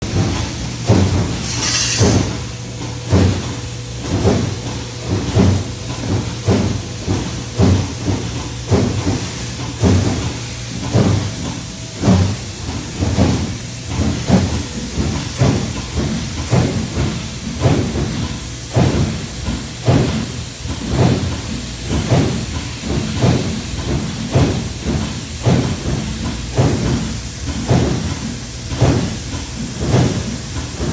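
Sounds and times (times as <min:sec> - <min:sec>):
industrial machinery hum: 0:00.0 - 0:30.9
clanking impacts: 0:00.1 - 0:03.5
hiss of air or steam: 0:01.3 - 0:02.5, 0:08.8 - 0:30.9.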